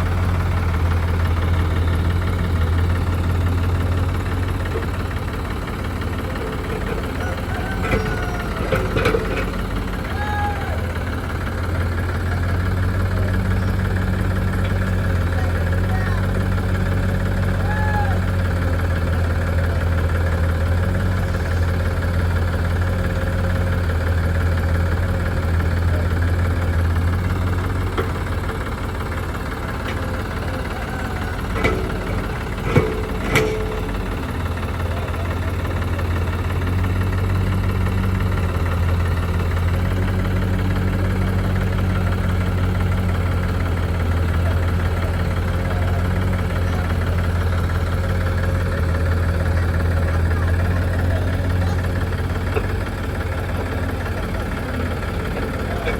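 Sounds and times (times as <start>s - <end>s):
diesel engine running: 0.0s - 55.9s
sharp metallic knocks: 31.5s - 34.4s.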